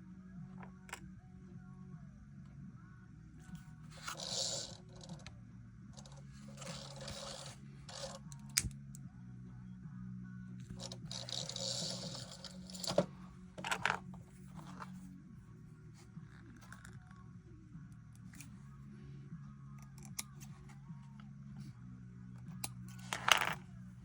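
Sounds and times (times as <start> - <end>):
low steady hum: 0.0 - 24.0
scraping noises: 3.9 - 5.3, 6.0 - 8.3, 10.7 - 15.1.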